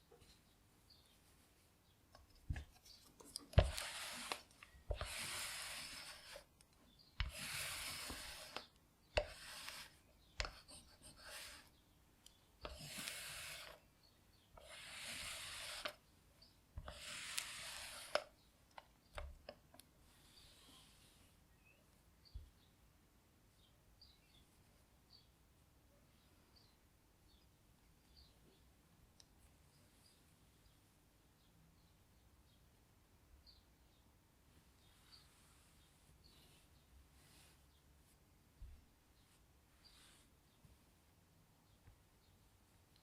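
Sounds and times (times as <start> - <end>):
hand rubbing fabric: 2.4 - 6.6, 7.2 - 11.8, 12.6 - 13.9.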